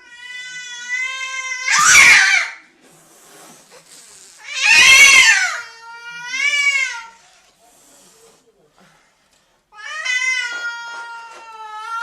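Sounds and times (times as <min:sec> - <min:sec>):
cat yowling: 0:00.2 - 0:02.6, 0:04.5 - 0:07.1.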